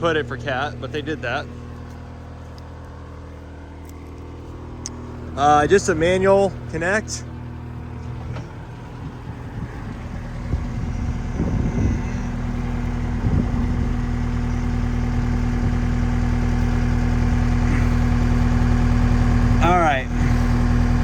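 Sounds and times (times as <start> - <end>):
diesel engine idling: 0.0 - 21.0
brief low bumps: 7.4 - 15.8.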